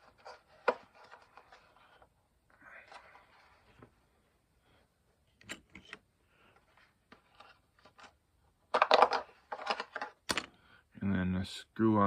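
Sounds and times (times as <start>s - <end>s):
plastic parts clicking: 8.7s - 10.6s.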